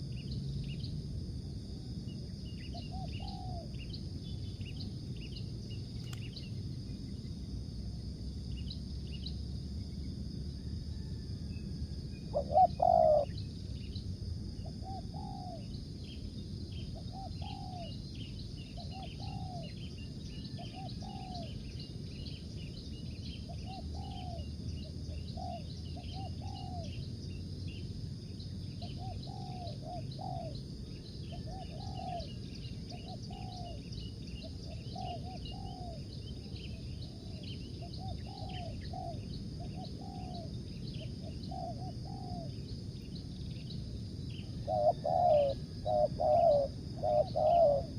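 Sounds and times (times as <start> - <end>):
dove cooing: 2.7 - 3.7, 12.3 - 13.3, 14.6 - 15.7, 17.0 - 17.9, 18.8 - 19.7, 20.5 - 21.6, 23.5 - 24.4, 25.4 - 26.9, 28.8 - 30.6, 31.3 - 36.0, 37.1 - 42.5, 44.6 - 47.9.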